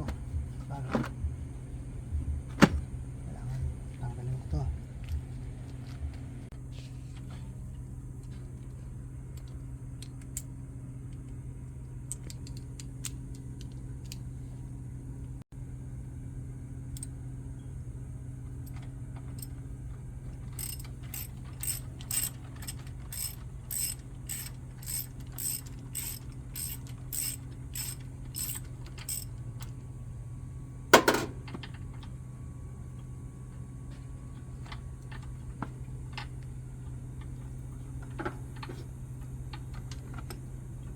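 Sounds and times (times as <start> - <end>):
low hum: 0.0 - 40.9
loud clunk: 2.5 - 2.9, 30.9 - 31.6
ratchet wrench clicking: 20.5 - 29.4.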